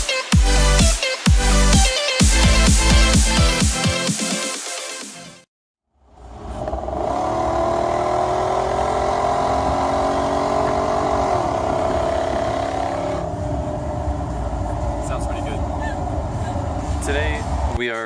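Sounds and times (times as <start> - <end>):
vehicle engine revving: 6.0 - 17.8.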